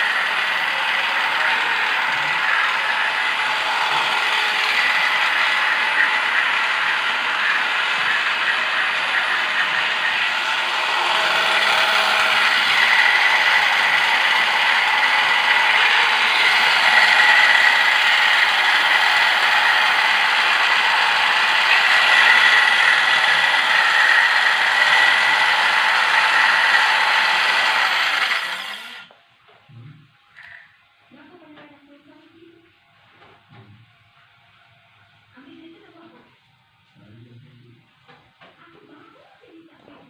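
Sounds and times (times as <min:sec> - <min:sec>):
cutting machine motor whining: 0:00.0 - 0:29.1.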